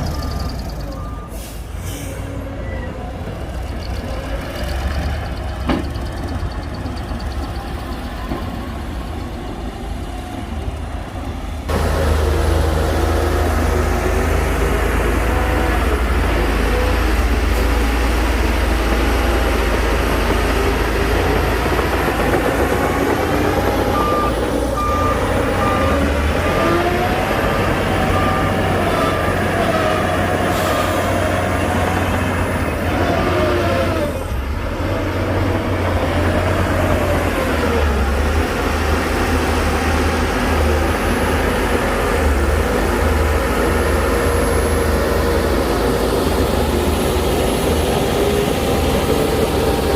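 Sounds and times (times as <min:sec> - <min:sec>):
reversing alarm beeping: 0:00.0 - 0:01.7, 0:23.6 - 0:26.8, 0:27.4 - 0:29.6
heavy diesel machinery running: 0:00.0 - 0:49.9.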